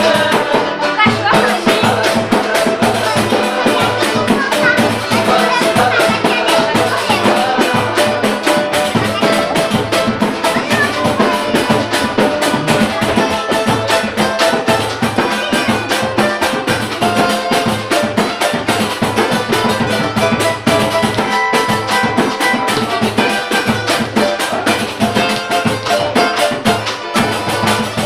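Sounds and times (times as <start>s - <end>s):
samba band playing: 0.0s - 28.0s.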